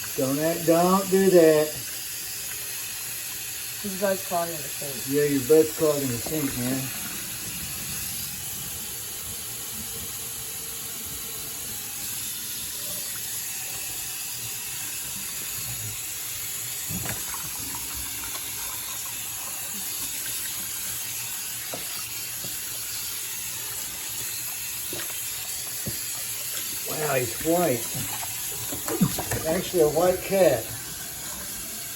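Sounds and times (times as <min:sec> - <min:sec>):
tap running into sink water: 0:05.1 - 0:07.5, 0:16.8 - 0:23.1, 0:23.7 - 0:31.2.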